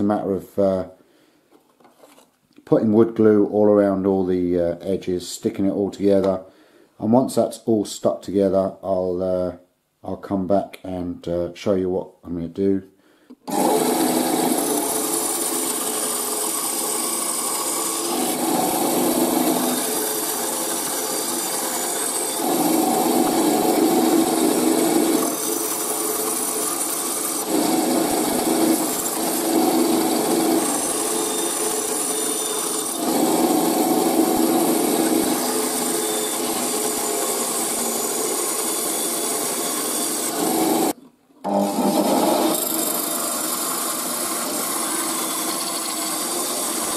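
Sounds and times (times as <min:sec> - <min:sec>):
power tool cutting wood: 0:13.4 - 0:46.9.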